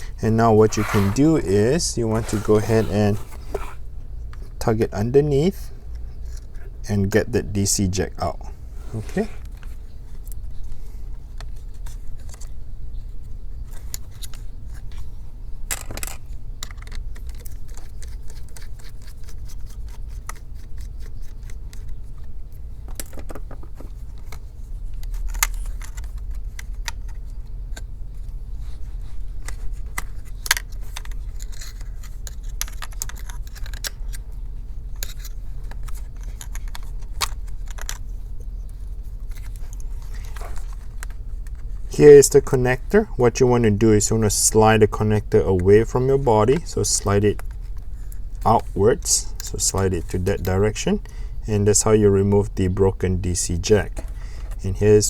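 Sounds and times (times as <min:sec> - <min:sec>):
steady low hum: 0:00.0 - 0:55.0
plastic clicks and scratches: 0:15.7 - 0:41.9.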